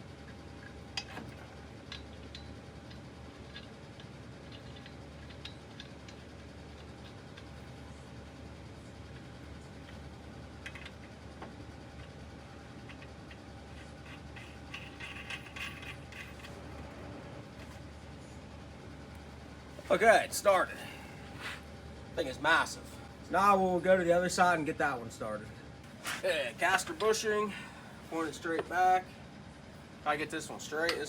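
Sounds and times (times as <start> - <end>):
low background hum: 0.0 - 31.0
light metal clicks and scrapes: 12.8 - 16.9.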